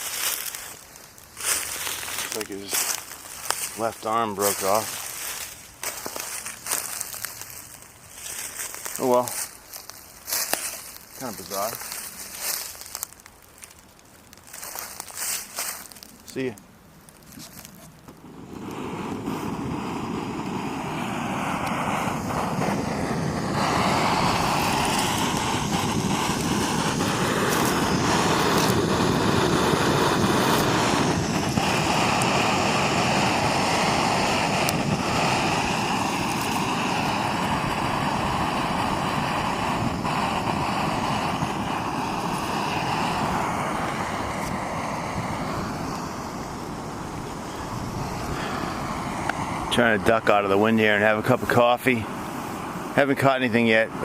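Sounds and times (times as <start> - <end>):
strong wind on microphone: 18.2 - 54.0.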